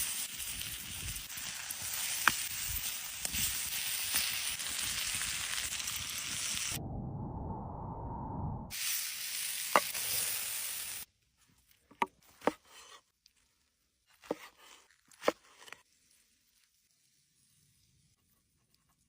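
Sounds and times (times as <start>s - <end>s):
meat sizzling in a pan: 0.0s - 6.8s, 8.7s - 11.1s.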